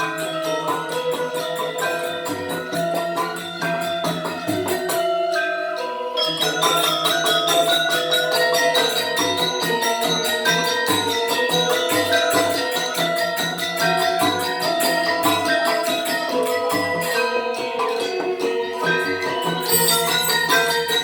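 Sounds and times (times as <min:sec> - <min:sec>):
gamelan metallophones playing: 0:19.4 - 0:21.0.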